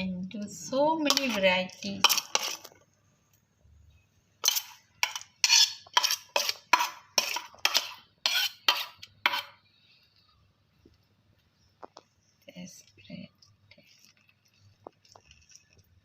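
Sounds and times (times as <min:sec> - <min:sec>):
metal utensil clattering on cookware: 0:01.0 - 0:02.7, 0:04.4 - 0:09.5.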